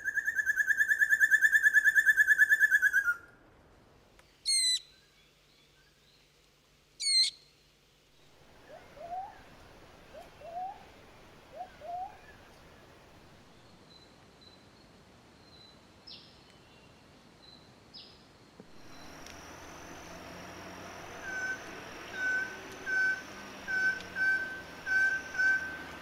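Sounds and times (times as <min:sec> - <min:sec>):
birds calling: 0:08.3 - 0:13.7, 0:18.7 - 0:26.0.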